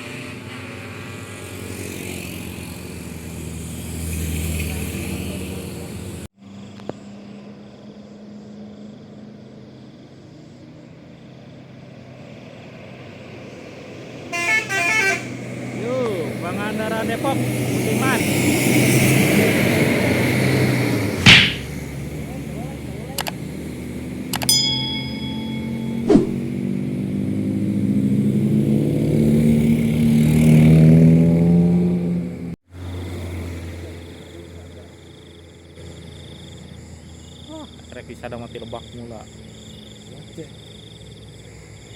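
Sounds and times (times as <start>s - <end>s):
large vehicle engine accelerating: 0.0s - 6.3s, 15.3s - 24.3s, 26.0s - 35.2s
brief sharp sound: 21.3s - 21.7s, 24.4s - 26.4s.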